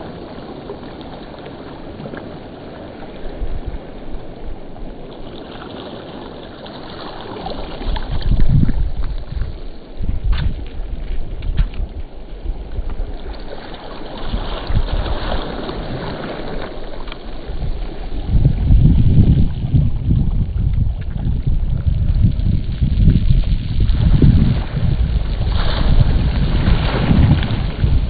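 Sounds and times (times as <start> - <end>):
wind buffeting microphone: 7.6 - 28.0.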